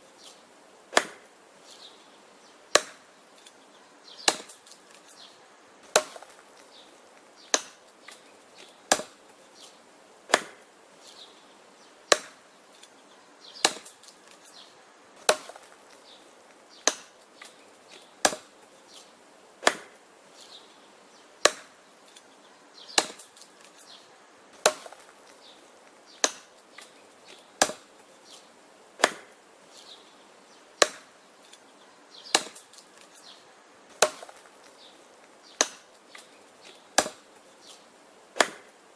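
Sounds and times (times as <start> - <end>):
wood chopping strikes: 0.9 - 1.3, 2.7 - 3.6, 4.2 - 5.2, 5.8 - 10.7, 12.1 - 13.0, 13.6 - 14.6, 15.2 - 20.0, 21.4 - 22.3, 22.9 - 23.9, 24.6 - 29.4, 30.8 - 31.6, 32.3 - 38.8.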